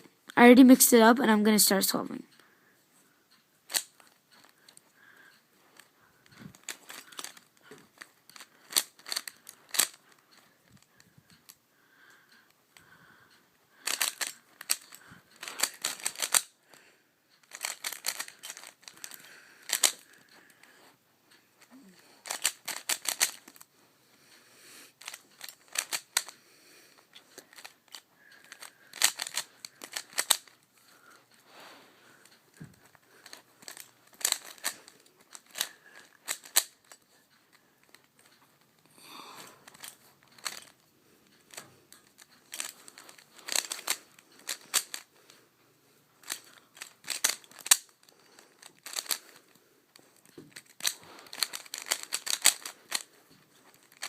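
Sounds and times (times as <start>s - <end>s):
puzzle cube clicking: 3.7s - 11.6s, 13.8s - 16.5s, 17.4s - 20.6s, 21.6s - 23.7s, 25.0s - 26.4s, 27.1s - 37.1s, 39.1s - 40.8s, 41.4s - 45.1s, 46.2s - 54.0s.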